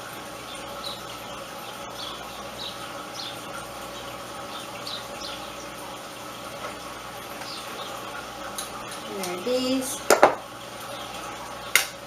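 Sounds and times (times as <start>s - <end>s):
small bird chirping: 0.4s - 5.7s.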